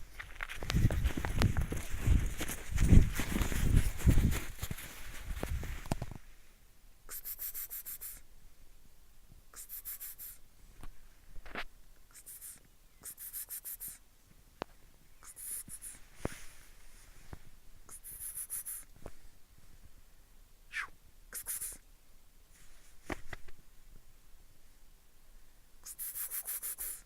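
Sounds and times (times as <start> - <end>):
footsteps crunching in snow: 0.0 - 6.2.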